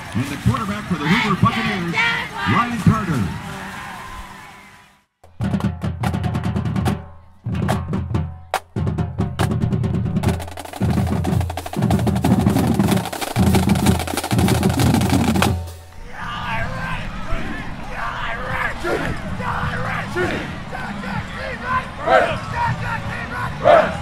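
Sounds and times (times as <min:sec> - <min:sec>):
snare drum rolls: 0:07.6 - 0:15.9.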